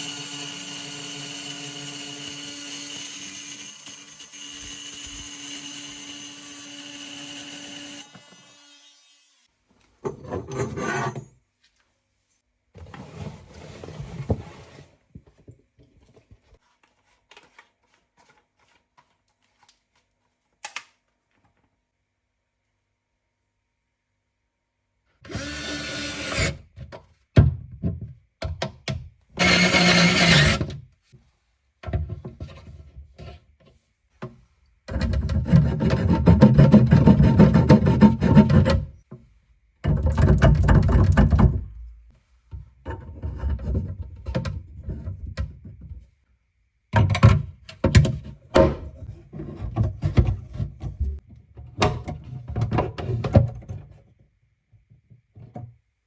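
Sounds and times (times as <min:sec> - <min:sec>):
hand tool rasping and scraping: 0:10.1 - 0:11.3, 0:29.4 - 0:30.7, 0:35.0 - 0:38.9.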